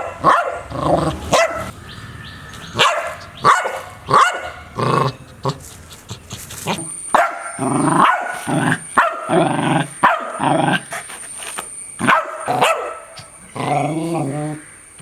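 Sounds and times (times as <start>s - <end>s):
dog barking: 0.0s - 1.7s, 2.8s - 4.8s, 7.1s - 9.4s, 10.0s - 10.4s, 12.0s - 13.3s.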